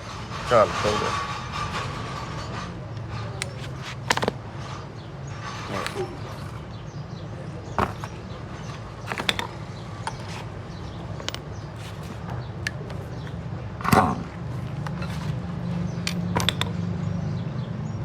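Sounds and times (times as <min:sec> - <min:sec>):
hand tools clinking on metal: 0:00.5 - 0:16.8
sharp knocks: 0:07.7 - 0:15.4.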